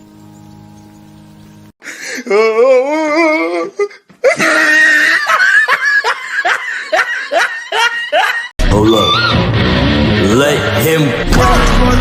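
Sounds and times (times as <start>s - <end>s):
burst of laughter: 4.3s - 8.5s
voice wailing wobbly pitch: 8.7s - 9.5s.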